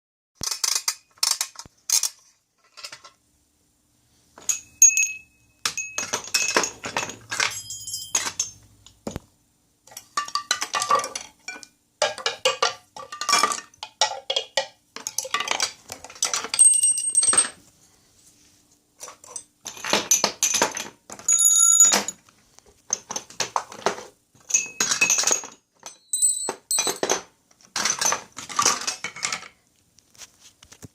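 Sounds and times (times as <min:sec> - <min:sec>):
metallic jingling and clinking: 0:04.4 - 0:08.7, 0:21.3 - 0:22.2, 0:24.5 - 0:27.2
short high ringing tones: 0:07.5 - 0:08.2, 0:21.3 - 0:22.1, 0:26.0 - 0:26.9.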